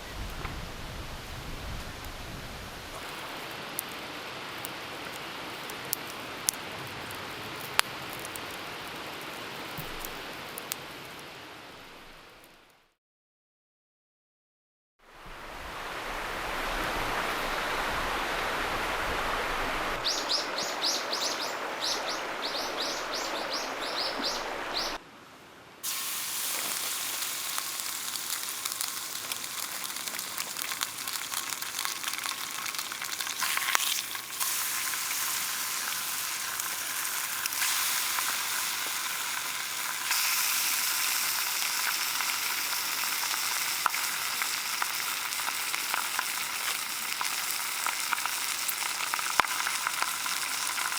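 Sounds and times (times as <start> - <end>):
steady rushing noise: 15.2 - 25.0
bird chirping: 20.0 - 25.0
food sizzling in a pan: 25.8 - 50.9.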